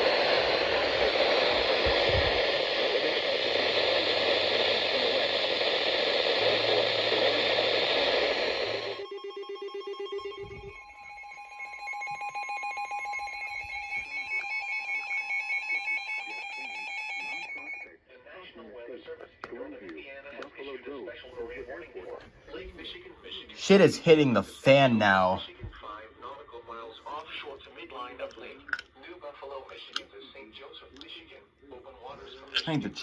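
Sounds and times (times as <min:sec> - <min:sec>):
radio static hiss: 0:00.0 - 0:09.0, 0:20.4 - 0:27.8, 0:31.8 - 0:33.0
two-tone electronic alert tone: 0:09.0 - 0:17.9.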